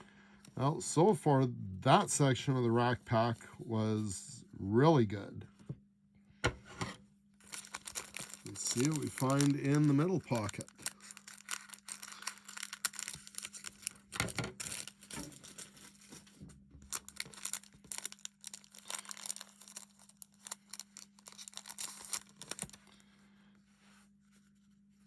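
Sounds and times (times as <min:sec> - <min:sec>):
faint steady hum: 0:00.0 - 0:25.0
plastic wrapper tearing and crinkling: 0:07.4 - 0:23.0.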